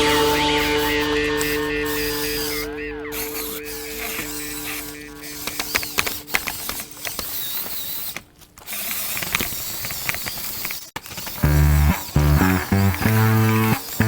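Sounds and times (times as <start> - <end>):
toy electric motors running: 0.0 - 14.0
plastic parts clicking: 5.4 - 14.0.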